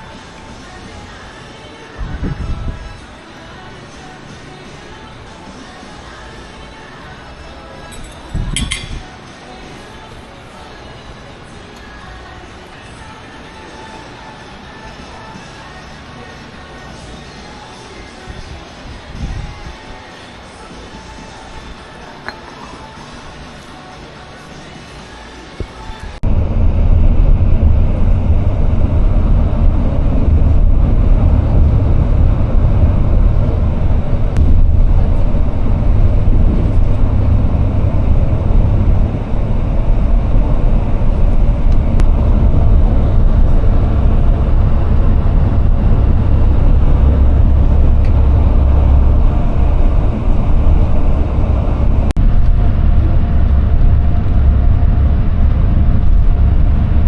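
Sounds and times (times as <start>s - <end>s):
road vehicle rumble: 26.1s - 57.0s.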